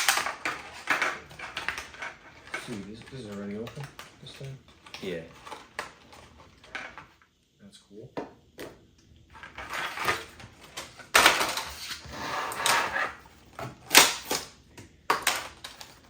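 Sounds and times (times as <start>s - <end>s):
plastic packaging crackling: 0.0s - 7.0s.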